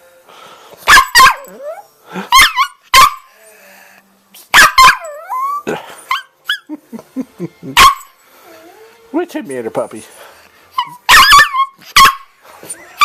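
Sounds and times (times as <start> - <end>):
dog barking: 0.9 - 1.5, 2.3 - 3.3, 4.5 - 5.1, 7.8 - 8.1, 10.8 - 12.3
dog whining yelps: 0.9 - 3.3, 4.5 - 6.7, 7.8 - 8.8, 10.8 - 13.0.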